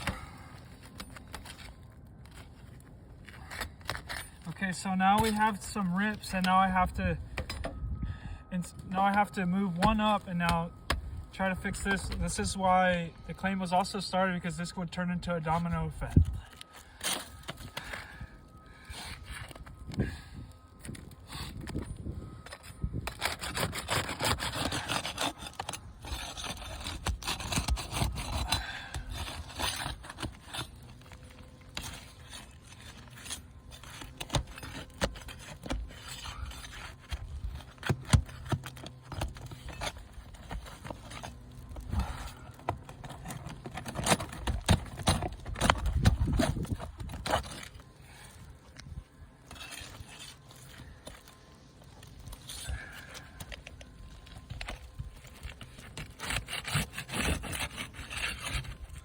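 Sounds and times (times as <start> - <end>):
roof shingles scraping: 22.4 - 59.0.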